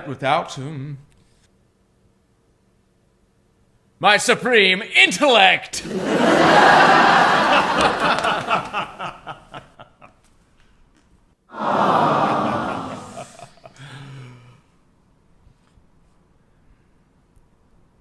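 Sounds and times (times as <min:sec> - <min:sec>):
person laughing: 0:05.8 - 0:10.1, 0:11.6 - 0:14.4.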